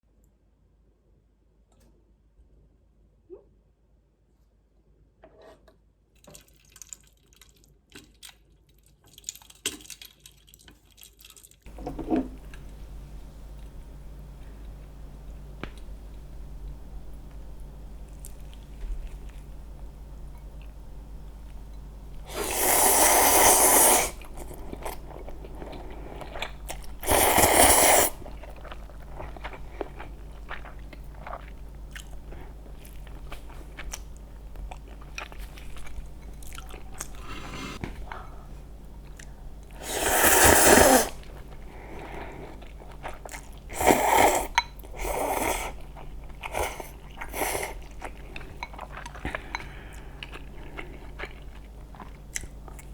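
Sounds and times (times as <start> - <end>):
chewing: 6.2 - 11.7, 18.0 - 19.5, 22.6 - 52.9.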